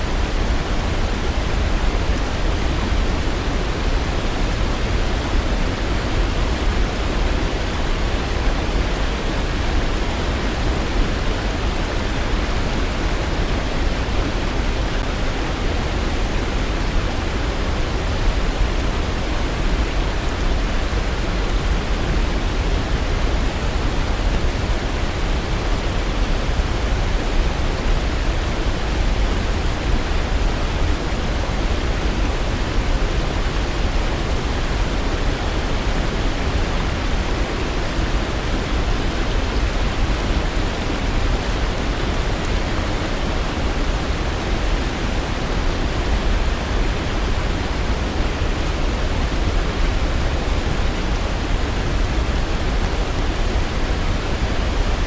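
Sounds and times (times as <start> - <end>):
waterfall rushing: 0.1 - 55.0.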